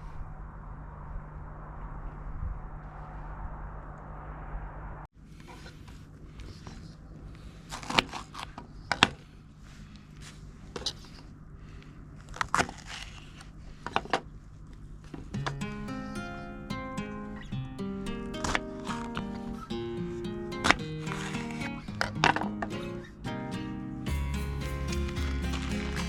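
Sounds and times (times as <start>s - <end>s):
steady low rumble: 0.0s - 5.1s
light scraping and rustling: 5.3s - 11.4s.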